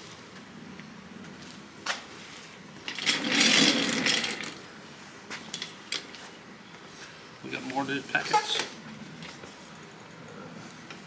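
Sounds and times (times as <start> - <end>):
parts rattling clatter: 2.8 - 4.7.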